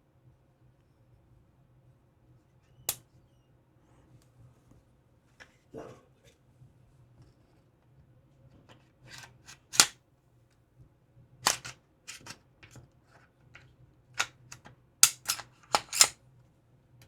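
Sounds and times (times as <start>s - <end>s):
pistol metallic clicks and clacks: 9.2s - 9.9s, 11.4s - 12.8s, 14.2s - 16.2s.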